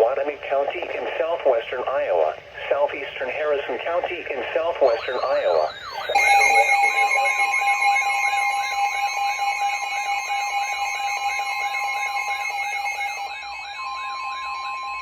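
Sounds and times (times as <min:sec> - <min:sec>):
steady alarm tone: 0:04.8 - 0:15.0
warbling alert siren: 0:04.8 - 0:15.0.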